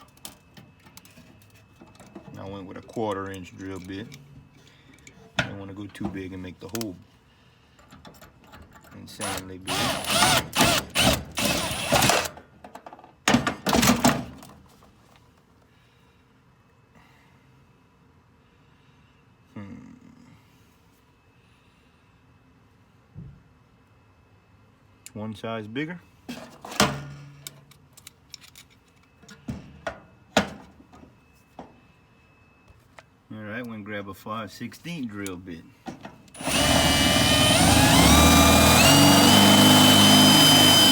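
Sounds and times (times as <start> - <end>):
metal parts and tools clicking: 27.4 - 29.1.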